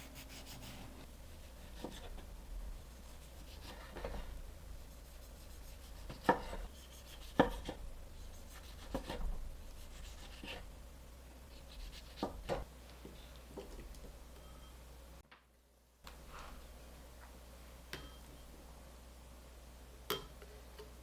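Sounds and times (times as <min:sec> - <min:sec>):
knife cutting on cutting board: 0:05.8 - 0:07.8, 0:08.5 - 0:09.3.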